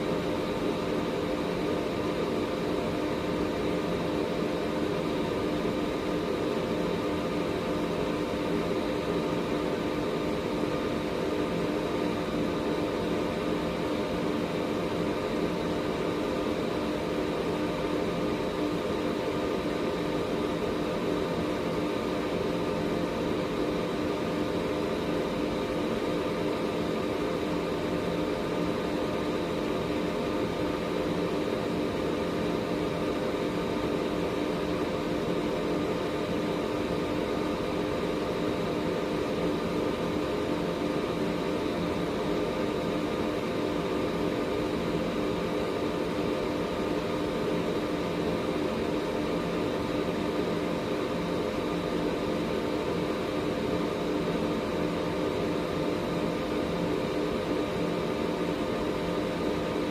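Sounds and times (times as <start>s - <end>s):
air purifier fan running: 0.0s - 59.9s.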